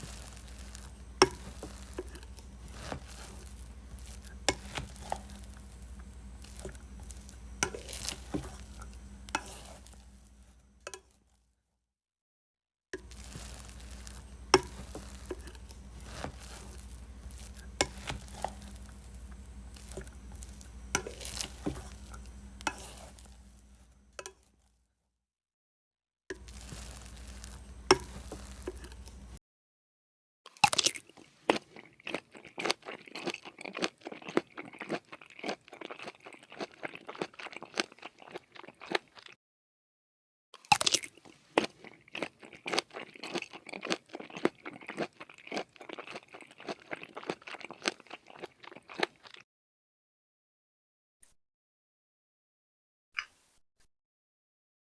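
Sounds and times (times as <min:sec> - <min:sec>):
crunchy chewing of food: 0:00.0 - 0:11.2, 0:13.0 - 0:24.0, 0:26.3 - 0:29.4, 0:30.5 - 0:39.4, 0:40.6 - 0:49.5
low steady hum: 0:00.0 - 0:11.2, 0:13.0 - 0:24.7, 0:26.4 - 0:29.4.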